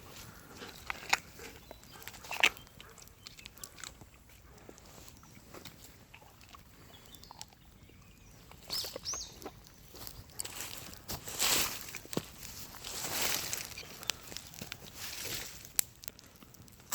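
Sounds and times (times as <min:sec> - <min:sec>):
bird chirp: 0:00.0 - 0:10.4, 0:13.4 - 0:14.5
bonfire crackling and popping: 0:08.6 - 0:16.9
rustle: 0:10.0 - 0:16.2.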